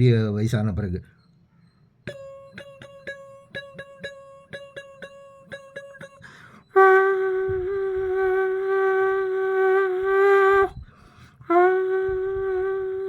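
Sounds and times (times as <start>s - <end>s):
vocal conch blast imitation: 2.1s - 10.8s, 11.4s - 13.0s
vocal gong imitation: 2.1s - 10.8s, 11.5s - 13.0s.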